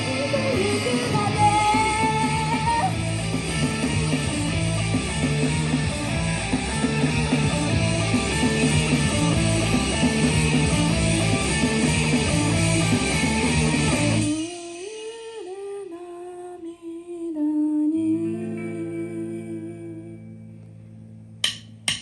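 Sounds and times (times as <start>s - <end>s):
person singing or humming: 0.0s - 3.0s, 14.2s - 20.4s
live rock band playing: 0.0s - 14.5s.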